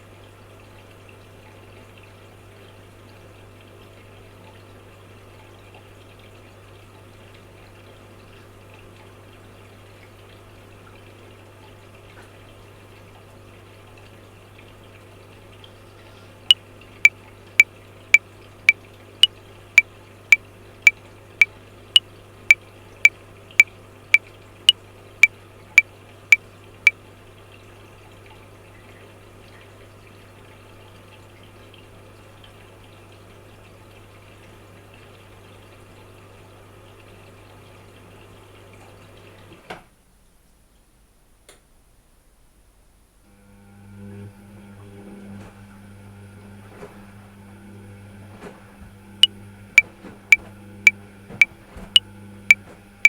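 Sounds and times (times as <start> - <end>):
washing machine running: 43.5 - 53.0.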